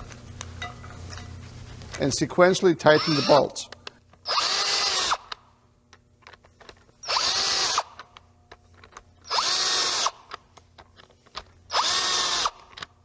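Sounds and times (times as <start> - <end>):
cordless drill driving bolts: 2.9 - 3.5, 4.2 - 5.4, 7.0 - 8.1, 9.2 - 10.4, 11.7 - 12.9.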